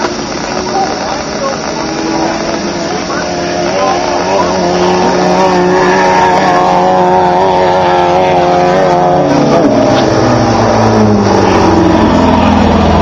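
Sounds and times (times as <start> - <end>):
race car engine running loudly: 0.0 - 13.0.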